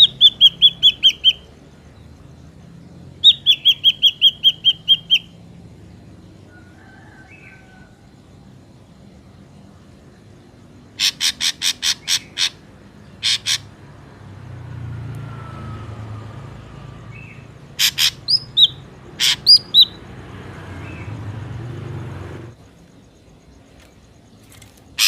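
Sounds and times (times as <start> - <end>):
bird harsh rasping calls: 0.0 - 1.5, 3.1 - 5.4, 10.9 - 13.9, 17.1 - 21.3.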